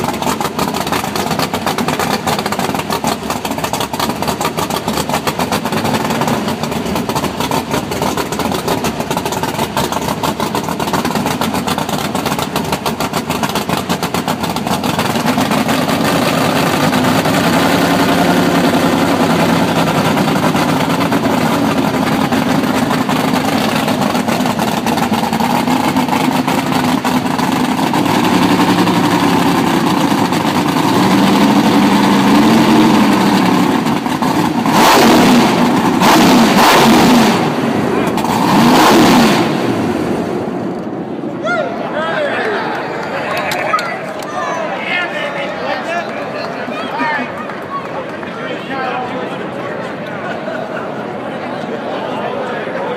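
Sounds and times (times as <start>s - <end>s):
race engine revving: 0.0s - 41.3s.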